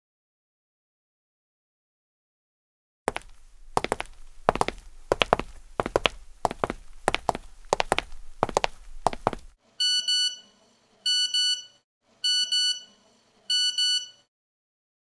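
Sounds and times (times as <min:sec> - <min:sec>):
electronic alarm beeping: 0:09.8 - 0:10.5, 0:11.1 - 0:14.2.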